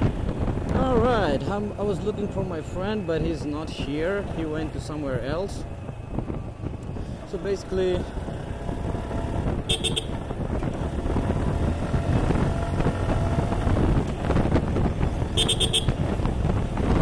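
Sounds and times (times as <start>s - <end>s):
road noise: 0.0s - 17.0s
motorcycle engine running: 5.6s - 17.0s.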